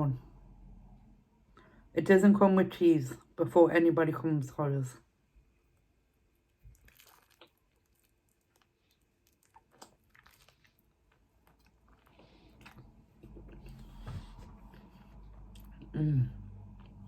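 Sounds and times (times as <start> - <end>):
person chewing food: 6.5 - 16.0.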